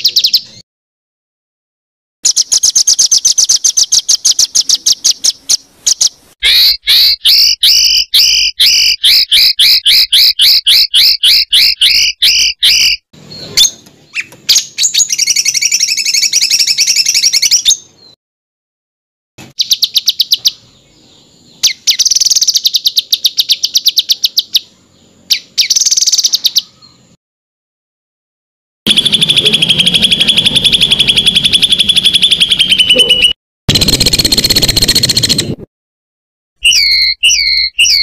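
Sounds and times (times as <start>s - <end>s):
dense bird trill: 0.0s - 0.6s, 2.2s - 18.2s, 19.4s - 27.2s, 28.9s - 35.6s, 36.6s - 38.0s
songbird rapid repeated notes: 2.2s - 17.9s, 19.4s - 20.8s, 21.6s - 26.6s, 28.9s - 35.7s
slurred two-toned bird notes: 28.9s - 35.5s.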